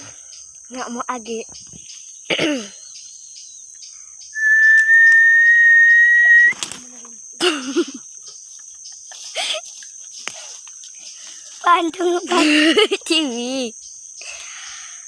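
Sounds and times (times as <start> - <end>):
insects chirping: 0.0 - 15.0
person whistling a long note: 4.4 - 6.6.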